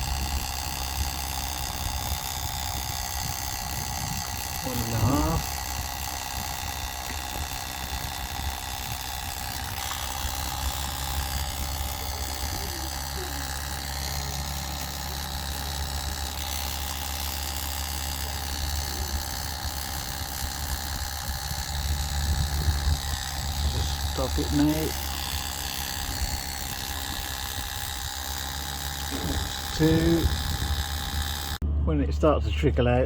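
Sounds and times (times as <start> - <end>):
oil pump humming: 0.0 - 33.0.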